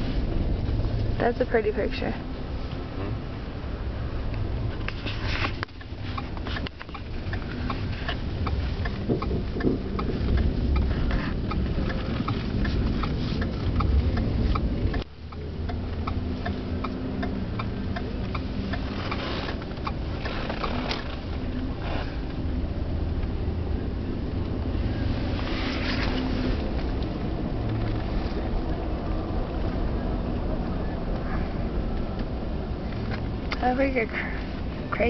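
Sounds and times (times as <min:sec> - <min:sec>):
car engine and tyres rumbling: 0:00.0 - 0:35.0
light regular ticking: 0:04.3 - 0:22.5.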